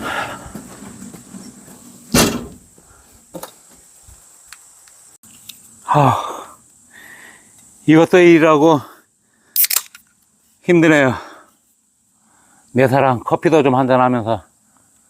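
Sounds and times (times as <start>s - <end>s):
man groaning: 5.9s - 6.6s.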